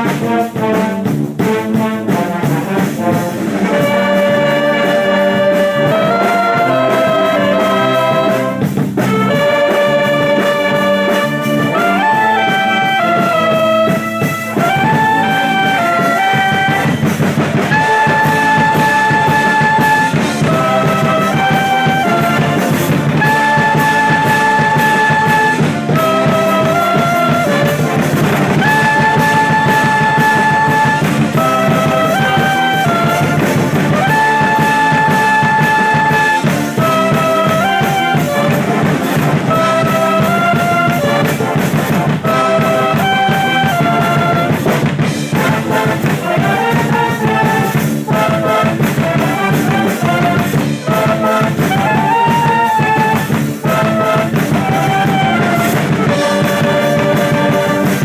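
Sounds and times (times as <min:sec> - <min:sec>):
drum kit beat: 0:00.0 - 0:58.0
trumpets and trombones playing: 0:00.0 - 0:58.0.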